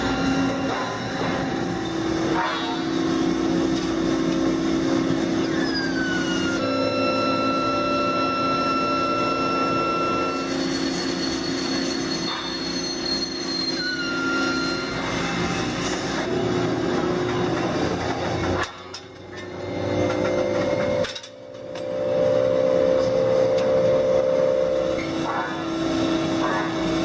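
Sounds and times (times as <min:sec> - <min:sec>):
factory machinery humming: 0:00.0 - 0:27.0
high squealing tones: 0:05.4 - 0:15.6.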